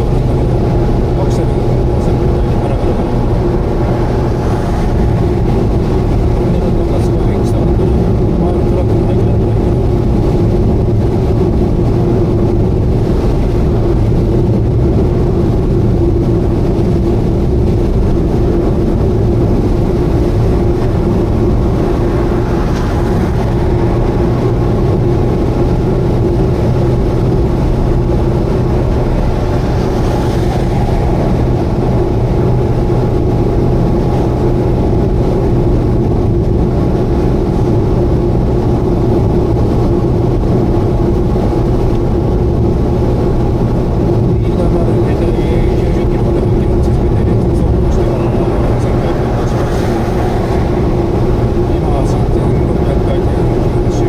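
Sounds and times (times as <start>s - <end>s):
car engine droning: 0.0s - 54.0s
tyre and road noise: 0.0s - 54.0s.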